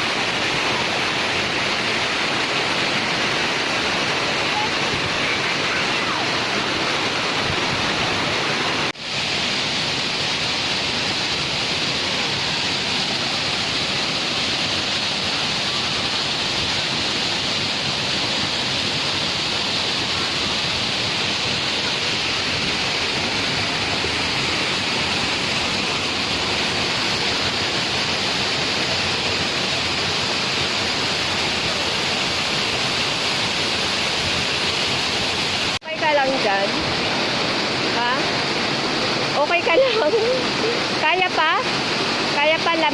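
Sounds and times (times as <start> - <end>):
waterfall pouring into pool: 0.0 - 42.9.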